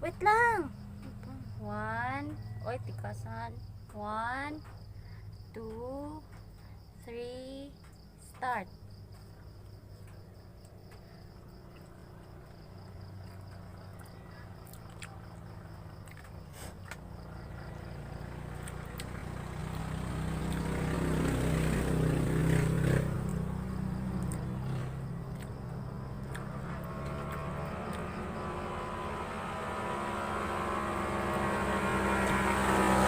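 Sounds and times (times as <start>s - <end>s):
crickets chirring: 0.0s - 33.0s
vehicle engine passing: 8.8s - 33.0s.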